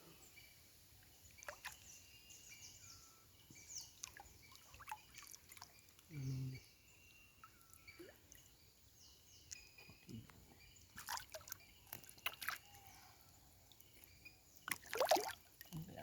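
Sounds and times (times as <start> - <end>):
faint bird chirps: 0.0 - 16.0
water drips and splashes: 1.3 - 1.9, 3.9 - 6.2, 7.6 - 8.5, 9.5 - 12.9, 13.7 - 16.0.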